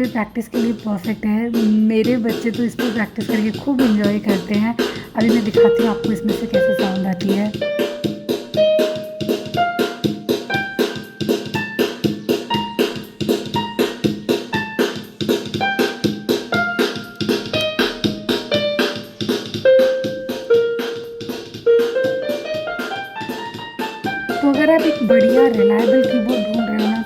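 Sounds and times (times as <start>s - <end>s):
keyboard piano melody: 0.0s - 27.0s
steady accompaniment beat: 0.0s - 27.0s.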